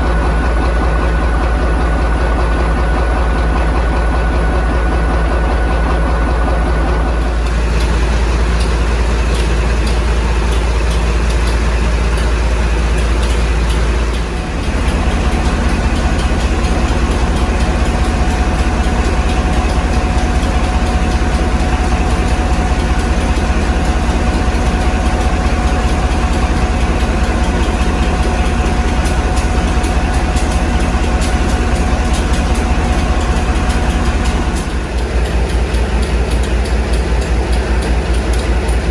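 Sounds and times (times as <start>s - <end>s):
locomotive diesel engine idling: 0.0s - 38.9s.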